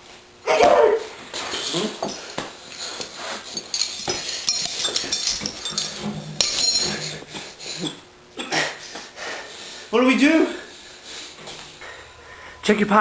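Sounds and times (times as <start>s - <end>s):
chain and padlock rattling: 3.4s - 7.4s.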